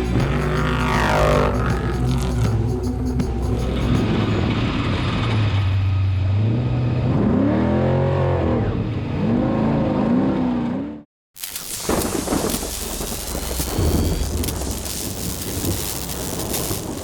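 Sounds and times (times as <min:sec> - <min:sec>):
truck engine revving: 0:00.0 - 0:11.0.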